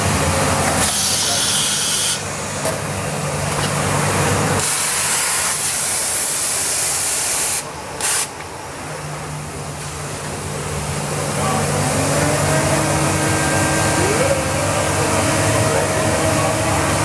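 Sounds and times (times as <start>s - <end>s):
loud hiss of air: 0.0s - 2.7s, 3.8s - 10.4s
low machine hum: 7.6s - 17.0s.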